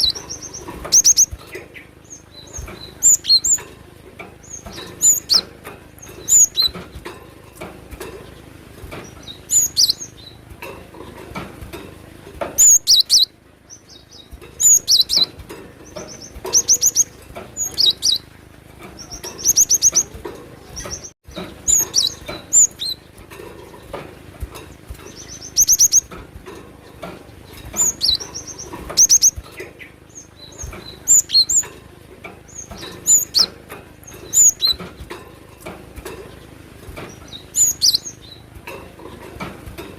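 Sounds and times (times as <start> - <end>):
bird singing high-pitched phrases: 0.0 - 3.6, 4.4 - 6.7, 9.1 - 10.4, 12.6 - 15.3, 15.9 - 18.3, 19.0 - 23.2, 25.1 - 26.1, 27.3 - 31.7, 32.5 - 34.8, 37.2 - 38.5.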